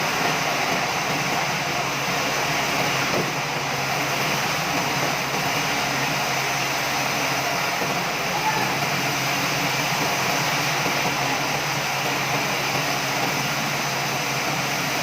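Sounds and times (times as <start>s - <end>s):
sawmill machinery humming: 0.0s - 15.0s.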